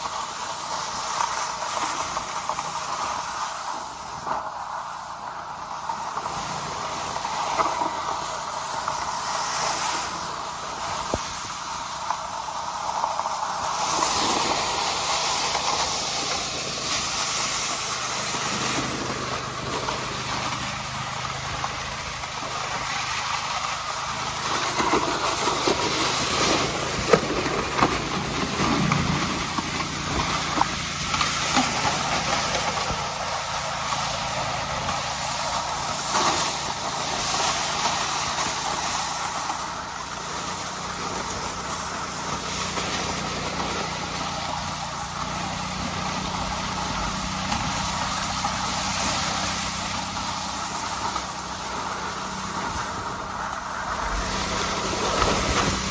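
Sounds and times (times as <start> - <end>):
tyres hissing on ice: 0.0 - 55.9.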